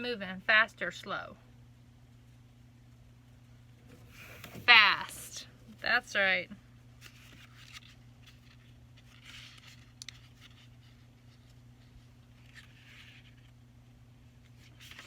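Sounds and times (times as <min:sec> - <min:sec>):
low steady hum: 0:00.0 - 0:15.0
book pages rustling: 0:07.0 - 0:13.6, 0:14.4 - 0:15.0.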